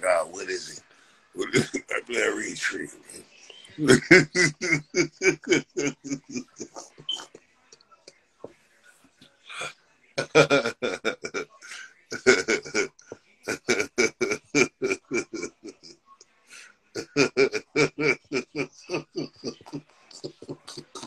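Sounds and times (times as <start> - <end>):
rapid non-word vocal sounds: 0.0 - 8.1, 9.2 - 21.0.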